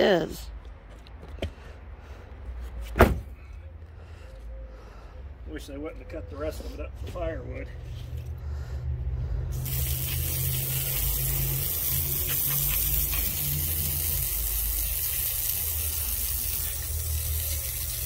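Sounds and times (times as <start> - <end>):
steady hiss: 9.6 - 18.0.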